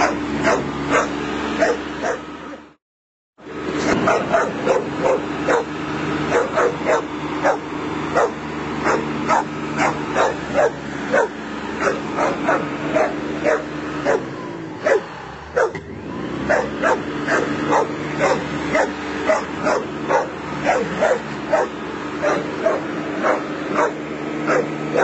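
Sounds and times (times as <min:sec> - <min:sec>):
dog barking and yipping: 0:00.0 - 0:02.3, 0:03.8 - 0:15.8, 0:16.4 - 0:25.0
lawnmower engine drone: 0:00.0 - 0:02.8, 0:03.4 - 0:25.0.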